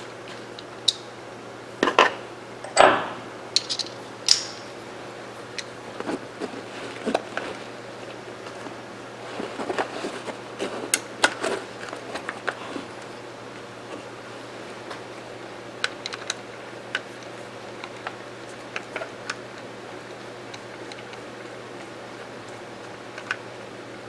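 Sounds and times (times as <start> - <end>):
metal rifle parts clicking: 3.6 - 4.7.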